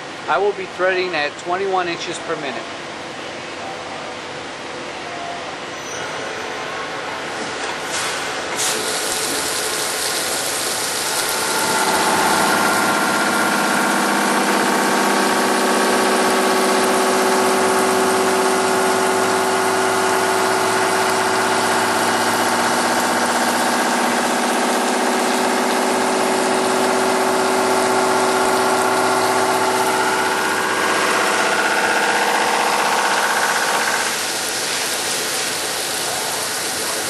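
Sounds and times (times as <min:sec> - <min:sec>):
milling machine multi-tone hum: 0:00.0 - 0:37.0
coolant hiss: 0:07.8 - 0:37.0.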